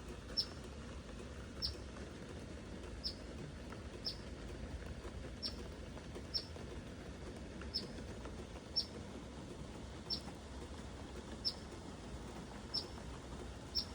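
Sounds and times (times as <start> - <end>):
bird peeps: 0.3 - 0.6, 10.1 - 10.3, 11.4 - 11.6, 12.7 - 13.0.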